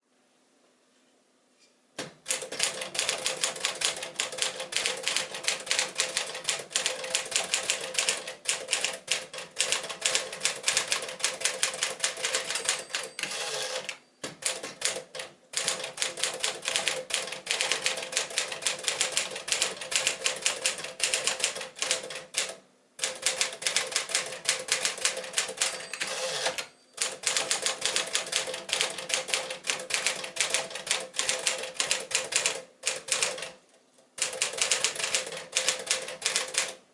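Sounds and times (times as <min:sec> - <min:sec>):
manual typewriter typing: 0:02.2 - 0:33.6, 0:34.2 - 0:36.8.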